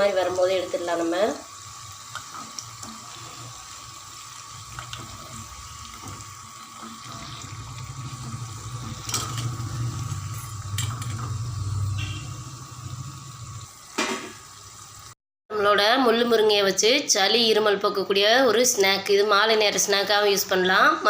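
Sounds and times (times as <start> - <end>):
oil sizzling and bubbling: 0.0 - 15.2.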